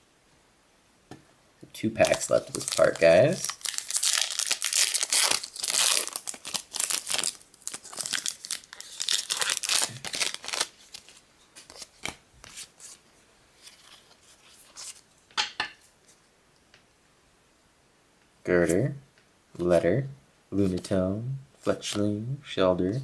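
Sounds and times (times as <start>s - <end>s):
foil wrapper tearing and crinkling: 2.0s - 12.2s.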